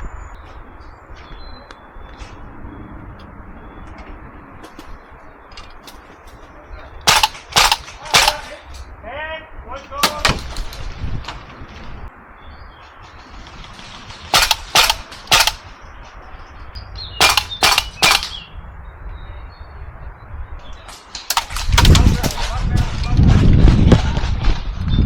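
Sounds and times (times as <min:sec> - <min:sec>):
airsoft rifle shots: 0:07.0 - 0:08.6, 0:14.2 - 0:15.7, 0:17.2 - 0:18.5, 0:21.2 - 0:22.3.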